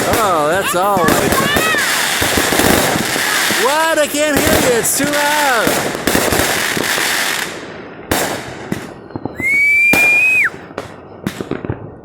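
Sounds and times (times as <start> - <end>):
loud firework burst: 0.0 - 11.8
fireworks bangs: 0.0 - 12.0
fireworks crackling: 0.0 - 12.0
whistling firework shell: 8.9 - 10.6.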